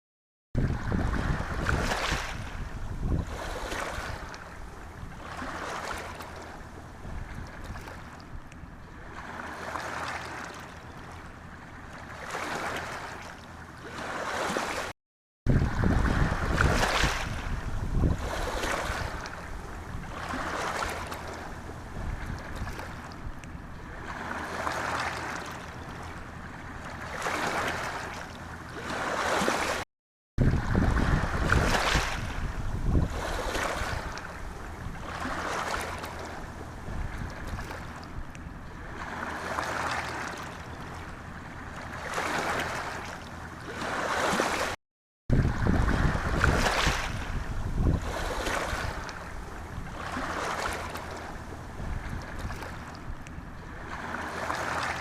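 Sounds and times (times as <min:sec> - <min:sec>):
sea waves washing against rocks: 0:00.6 - 0:08.0, 0:15.5 - 0:23.1, 0:23.9 - 0:25.6, 0:28.8 - 0:29.8, 0:30.4 - 0:38.0, 0:41.8 - 0:43.1, 0:43.7 - 0:53.0, 0:53.7 - 0:55.0.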